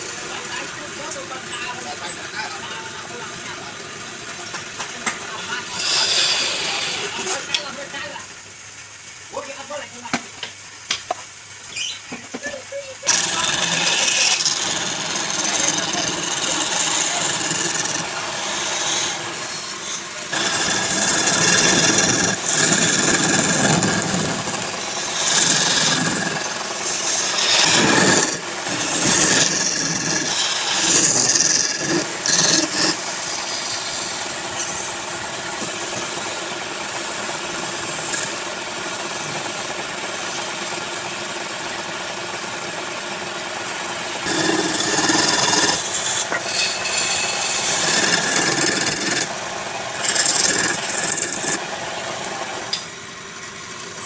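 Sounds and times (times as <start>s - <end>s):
wood lathe humming: 0.0s - 8.1s, 13.0s - 54.0s
tool rasping against spinning wood: 5.4s - 7.9s, 13.0s - 40.6s, 44.2s - 52.8s.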